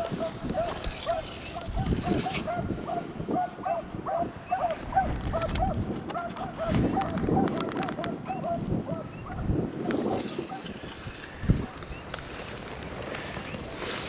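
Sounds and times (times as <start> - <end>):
hounds barking: 0.0 - 10.7.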